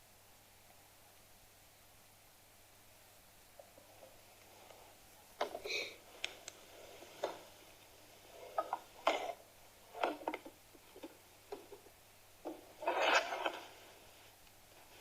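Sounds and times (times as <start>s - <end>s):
breathy rustling sounds: 4.0s - 9.4s.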